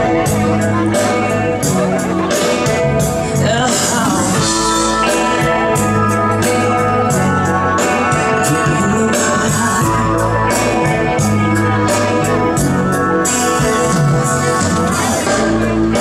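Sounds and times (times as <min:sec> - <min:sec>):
live band playing pop ballad: 0:00.0 - 0:16.0.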